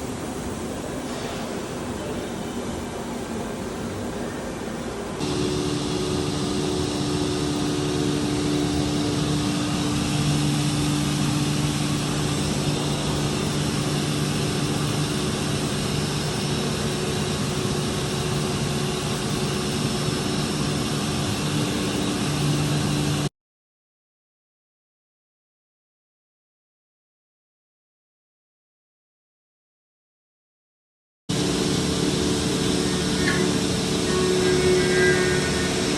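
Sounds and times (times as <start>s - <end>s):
milling machine drone: 5.2s - 23.3s, 31.3s - 35.9s.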